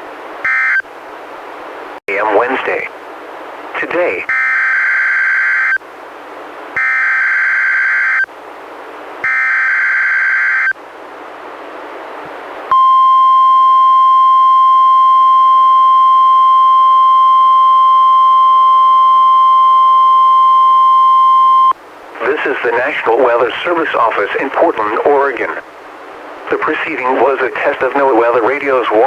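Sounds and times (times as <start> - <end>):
steady warning alarm tone: 0.4 - 0.8, 4.3 - 5.8, 6.8 - 8.3, 9.2 - 10.8, 12.7 - 21.8
radio hiss: 2.1 - 3.0, 3.7 - 4.3, 22.1 - 29.0.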